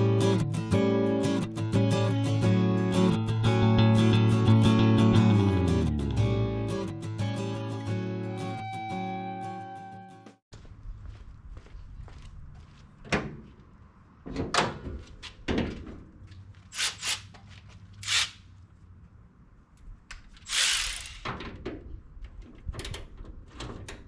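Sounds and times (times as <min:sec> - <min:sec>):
objects knocking and clunking: 0:14.2 - 0:16.2.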